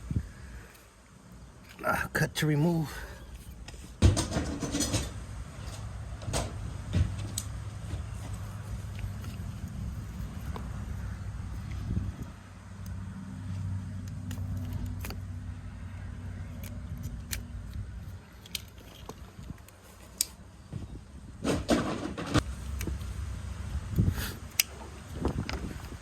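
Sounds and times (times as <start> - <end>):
low steady hum: 0.0 - 26.0
loud clattering handling noise: 3.4 - 10.8, 21.4 - 23.2.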